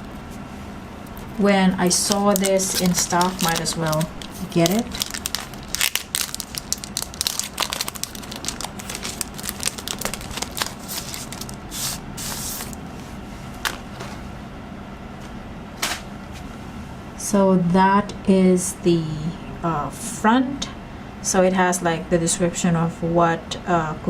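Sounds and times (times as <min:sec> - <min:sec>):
packaging crackling and crinkling: 0:01.8 - 0:12.8
packaging tearing rustle: 0:01.8 - 0:12.8.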